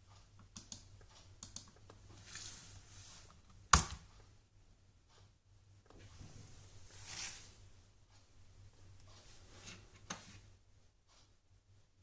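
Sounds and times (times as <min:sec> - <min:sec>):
computer keyboard clicks: 0:00.5 - 0:01.8.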